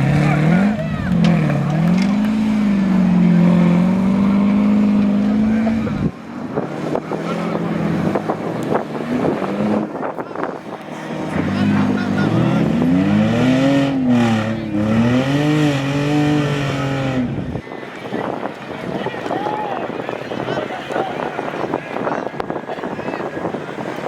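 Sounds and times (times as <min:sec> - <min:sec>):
vehicle engine revving: 0:00.0 - 0:18.6.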